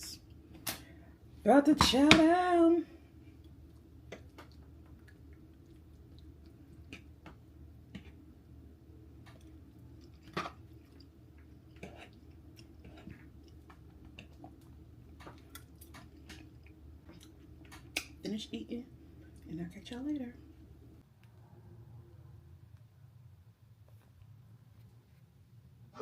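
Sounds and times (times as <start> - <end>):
steady low hum: 0.0 - 26.0
person chewing: 3.4 - 8.3, 9.2 - 18.2.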